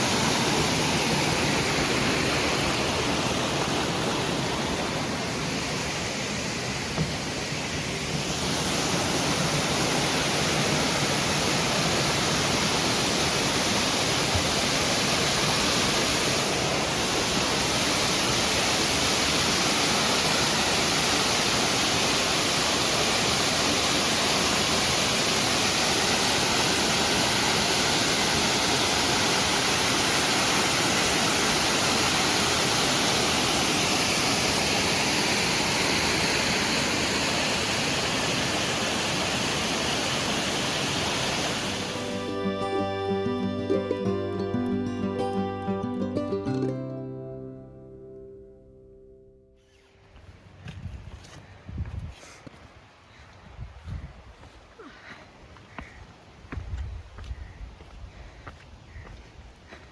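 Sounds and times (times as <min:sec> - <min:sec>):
running water rushing: 0:00.0 - 0:45.7.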